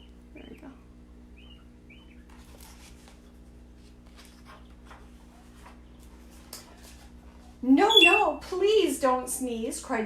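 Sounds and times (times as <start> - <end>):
steady low hum: 0.0 - 10.0
paper pages rustling: 2.2 - 7.6.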